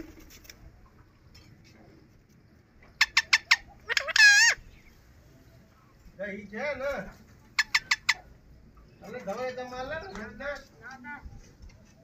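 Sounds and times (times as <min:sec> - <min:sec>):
parakeet calling: 0:02.9 - 0:05.0, 0:07.5 - 0:09.0.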